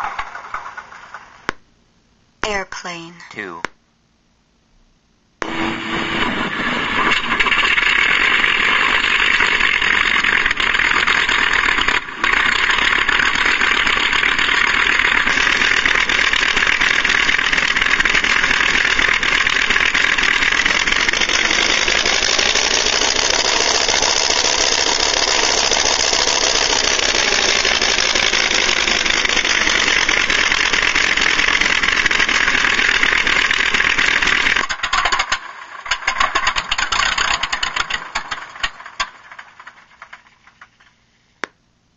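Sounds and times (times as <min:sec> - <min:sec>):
aircraft engine drone from speaker: 0:02.4 - 0:03.7, 0:05.4 - 0:34.6.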